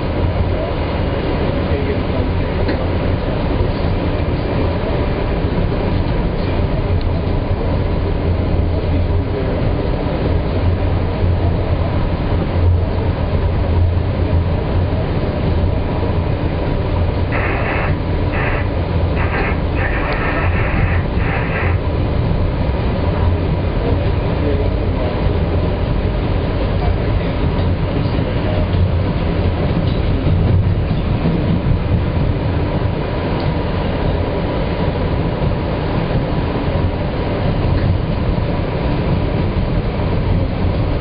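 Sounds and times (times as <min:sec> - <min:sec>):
subway train rumbling: 0:00.0 - 0:41.0
high wheel squeal: 0:17.3 - 0:21.8.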